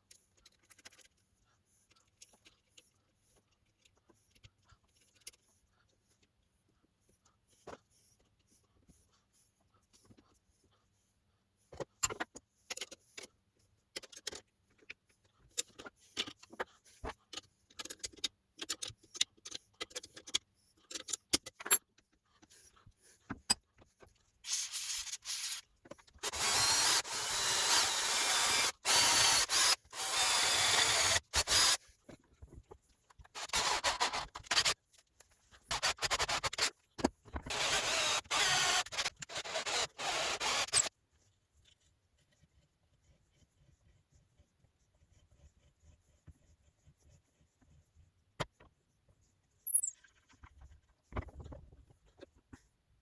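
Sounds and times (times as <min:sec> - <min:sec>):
parts clicking and tapping: 0:11.7 - 0:13.3, 0:13.9 - 0:22.6.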